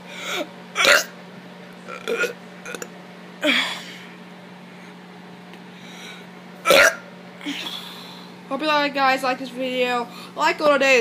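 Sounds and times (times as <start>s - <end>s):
child burping: 0.8s - 1.1s, 1.9s - 3.9s, 6.7s - 7.0s.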